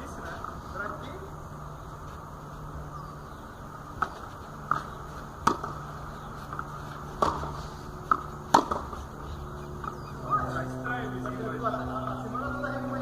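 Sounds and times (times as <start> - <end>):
faint steady hum: 0.0 - 13.0
tennis ball hits: 4.0 - 9.0.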